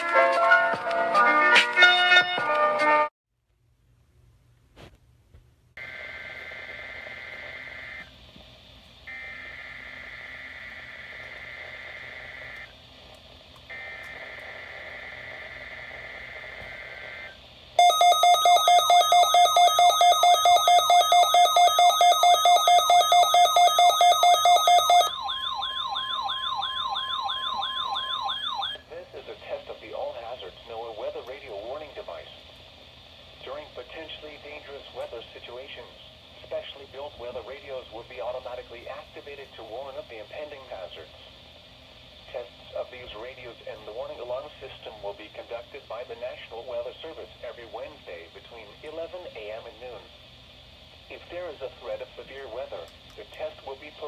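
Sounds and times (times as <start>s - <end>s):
pulsing warbling alarm tone: 17.8s - 28.8s.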